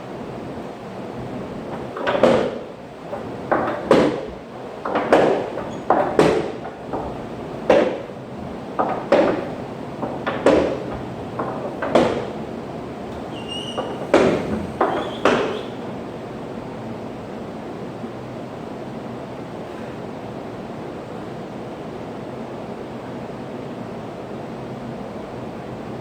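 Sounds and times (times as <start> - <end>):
steady background hiss: 0.0 - 26.0
irregular knocks: 1.6 - 15.9.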